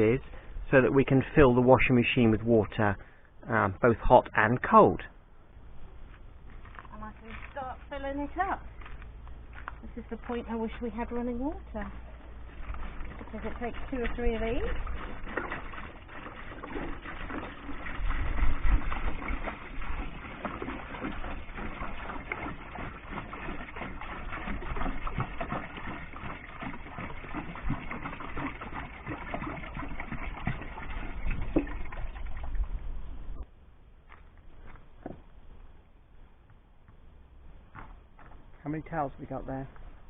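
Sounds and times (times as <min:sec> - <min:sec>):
water pouring into a tub: 0:12.5 - 0:32.8.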